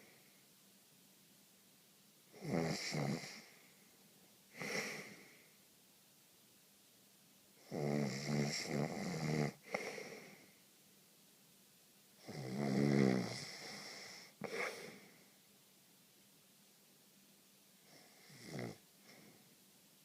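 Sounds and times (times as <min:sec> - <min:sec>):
quiet breathing: 0:00.0 - 0:00.6, 0:02.3 - 0:05.7, 0:07.5 - 0:10.8, 0:12.1 - 0:15.6, 0:17.8 - 0:19.8
person snoring: 0:02.4 - 0:03.6, 0:07.6 - 0:10.4, 0:12.2 - 0:15.1, 0:17.9 - 0:19.2.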